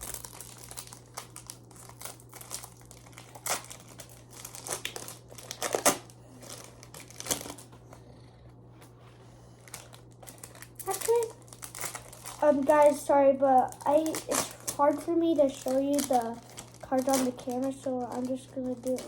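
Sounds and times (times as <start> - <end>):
foil wrappers crinkling: 0.0 - 7.8, 9.5 - 19.0.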